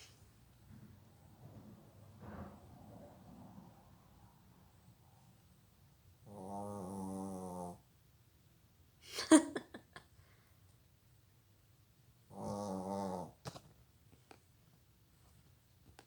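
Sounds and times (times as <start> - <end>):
snoring: 6.3 - 7.8, 12.3 - 13.4.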